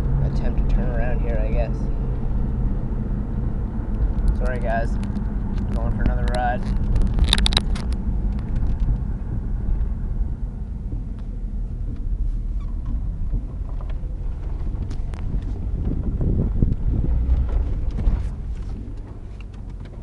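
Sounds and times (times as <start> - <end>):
car engine and road noise: 0.0 - 20.0.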